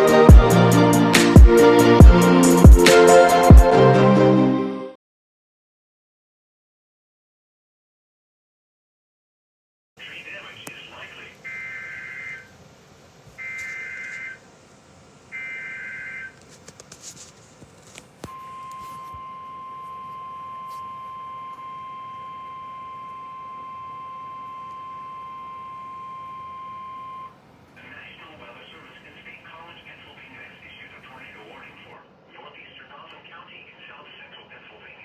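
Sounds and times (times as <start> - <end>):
static crackles: 10.0 - 21.6, 27.8 - 35.0
steady alarm tone: 11.4 - 12.5, 13.4 - 14.4, 15.3 - 16.3, 18.3 - 27.4.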